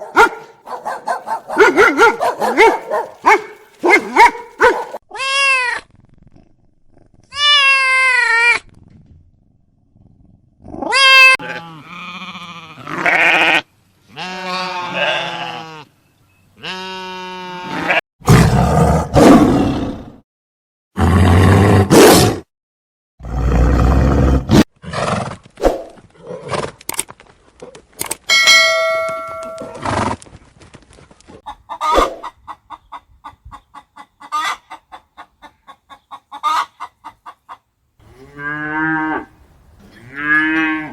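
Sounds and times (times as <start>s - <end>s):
animal cries: 10.8s - 13.6s, 14.2s - 15.9s
rough animal roars: 17.7s - 20.2s, 21.0s - 21.9s, 23.2s - 25.3s.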